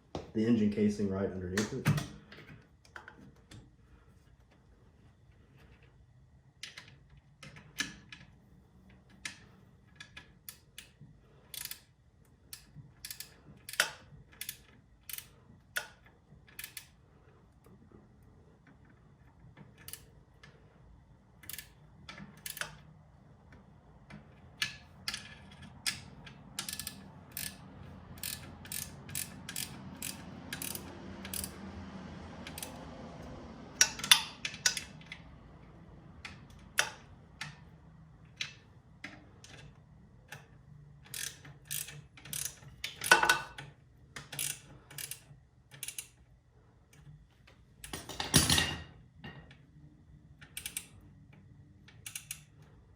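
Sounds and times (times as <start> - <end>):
wrench and pry bar clicking on metal: 28.2 - 31.6, 41.1 - 43.6.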